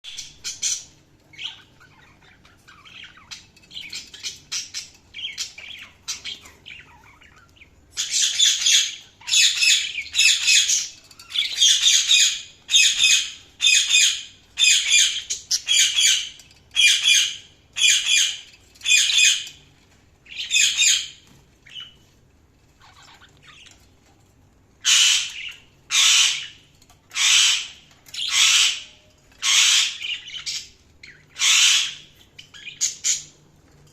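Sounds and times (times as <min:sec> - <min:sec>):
budgerigars chattering: 0:00.1 - 0:19.6, 0:20.3 - 0:22.0, 0:24.8 - 0:33.3
budgerigars squawking: 0:08.0 - 0:19.5, 0:24.8 - 0:33.3.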